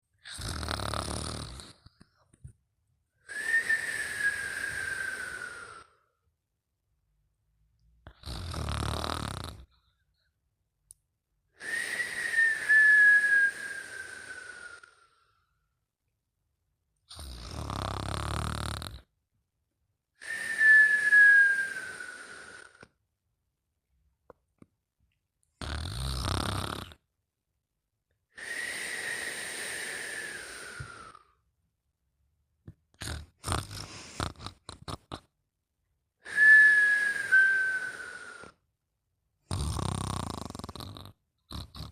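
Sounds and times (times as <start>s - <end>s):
person snoring: 0.2s - 2.0s, 8.1s - 9.8s, 11.6s - 15.3s, 17.1s - 19.1s, 20.2s - 22.9s, 25.6s - 27.0s, 28.4s - 31.4s, 33.0s - 35.3s, 36.3s - 38.6s, 39.5s - 41.9s
high whistle sliding down: 36.3s - 38.3s.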